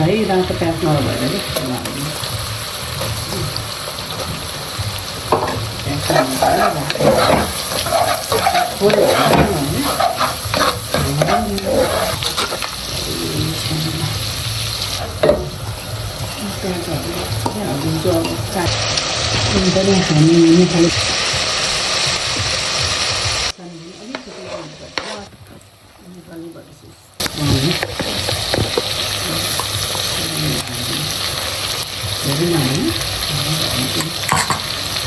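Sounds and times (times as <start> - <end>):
onion sizzling in butter: 0.0 - 26.0, 27.2 - 35.0
spatula scraping pan: 5.3 - 14.1, 24.0 - 25.3.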